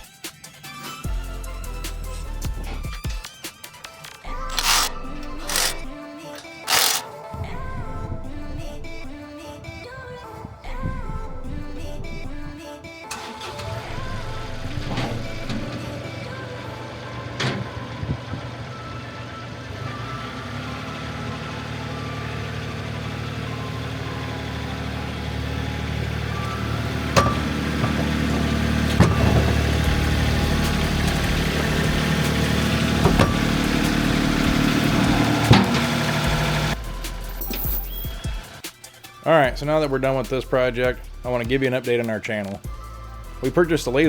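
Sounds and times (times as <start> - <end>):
tractor diesel engine running: 1.0 - 3.2, 3.8 - 9.7, 10.5 - 38.7, 39.4 - 41.8, 42.6 - 44.0
sharp clicks and clanks: 2.7 - 7.1, 13.1 - 18.5, 26.2 - 38.8.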